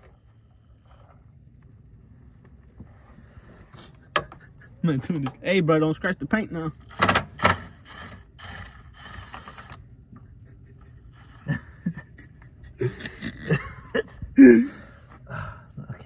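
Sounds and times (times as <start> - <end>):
breathy stifled laughter: 3.9 - 4.9, 10.3 - 15.7.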